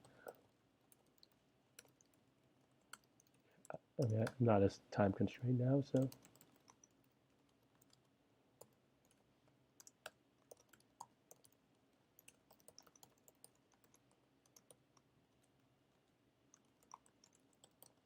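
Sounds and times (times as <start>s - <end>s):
computer keyboard typing: 0.0s - 4.4s, 5.9s - 15.6s, 16.4s - 18.0s.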